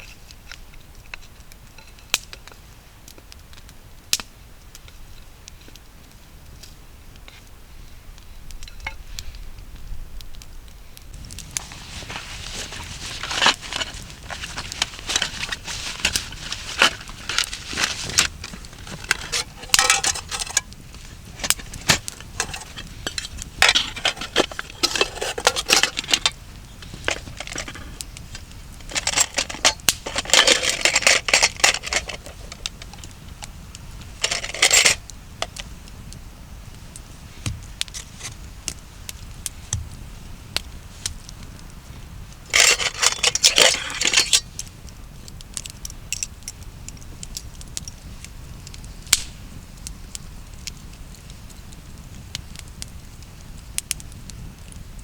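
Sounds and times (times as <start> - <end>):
handling scraping: 11.2 - 35.6, 37.4 - 38.5, 42.5 - 44.5
light clinking: 11.6 - 33.1, 34.2 - 35.6, 42.5 - 44.6.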